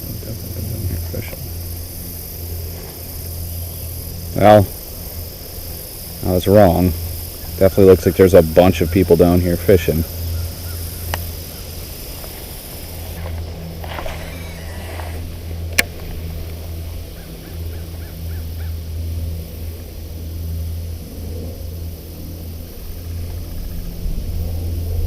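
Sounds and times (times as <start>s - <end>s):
steady low hum: 0.0s - 25.0s
bird calls: 2.8s - 19.0s.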